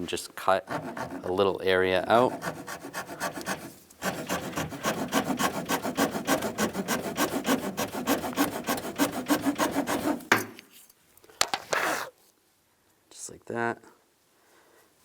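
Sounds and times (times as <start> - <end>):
file rasping on plastic: 0.0 - 10.3.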